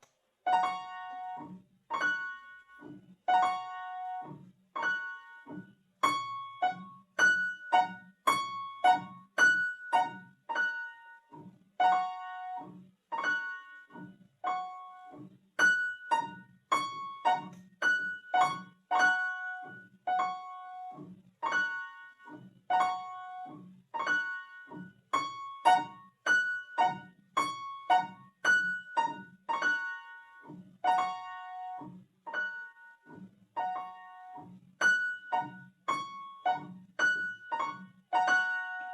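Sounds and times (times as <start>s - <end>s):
piano duet accompaniment: 0.5s - 11.2s, 11.8s - 38.9s.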